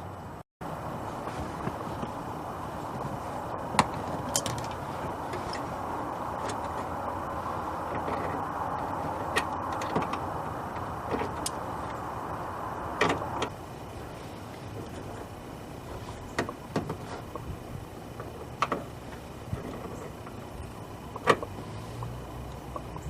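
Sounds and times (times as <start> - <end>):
steady rushing background noise: 0.0 - 23.0
tools clicking and knocking: 3.8 - 4.8.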